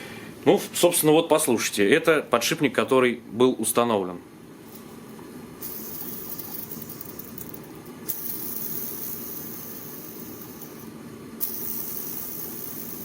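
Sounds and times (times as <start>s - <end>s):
worn ball bearing spinning: 5.6s - 13.0s.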